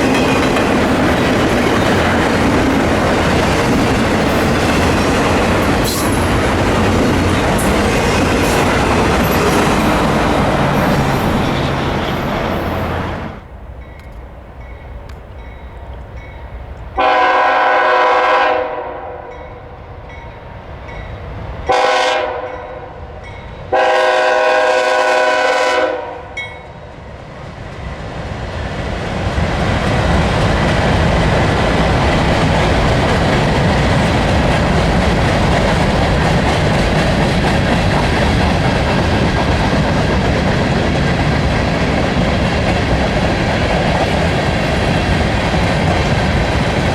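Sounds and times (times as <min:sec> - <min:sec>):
train wheels rumbling on rails: 0:00.0 - 0:18.4, 0:19.3 - 0:46.9
locomotive air horn blasts: 0:17.0 - 0:19.4, 0:21.7 - 0:22.6, 0:23.7 - 0:26.4.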